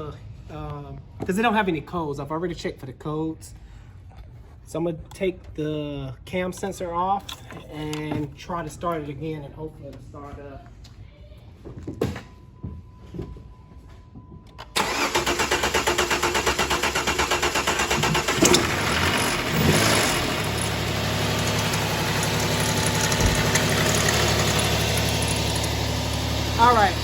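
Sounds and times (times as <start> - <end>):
engine cranking on starter: 14.6 - 27.0
engine running roughly: 14.8 - 27.0.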